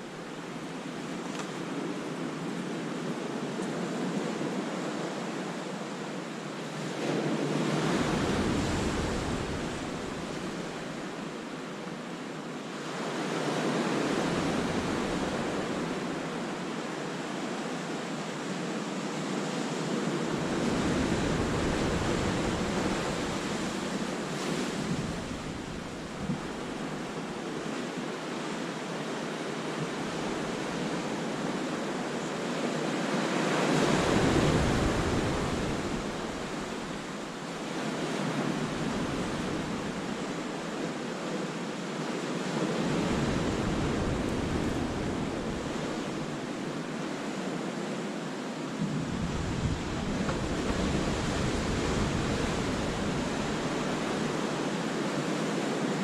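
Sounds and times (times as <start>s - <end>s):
waves breaking over rocks: 48.7s - 55.2s.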